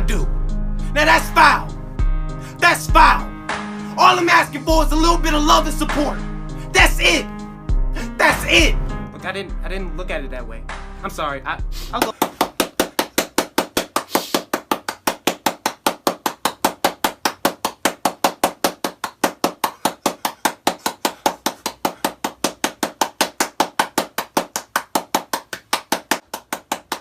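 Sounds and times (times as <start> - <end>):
rapid sharp knocks: 12.0 - 27.0.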